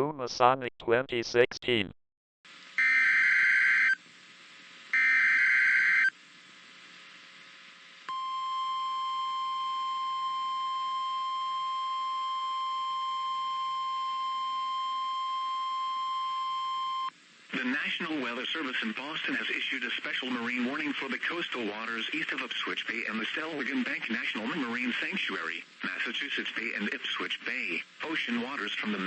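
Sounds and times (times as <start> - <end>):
single-tone warning alarm: 2.8 - 4.0, 5.0 - 6.1.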